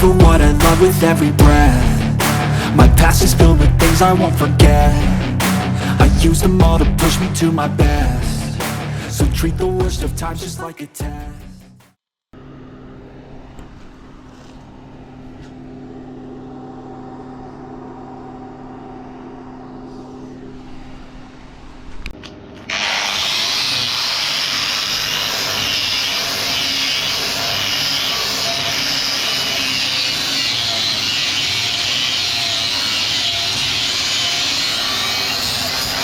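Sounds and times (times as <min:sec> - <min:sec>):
machine hum: 0:00.0 - 0:10.4, 0:12.4 - 0:22.8
welding arc crackling hiss: 0:22.7 - 0:36.0.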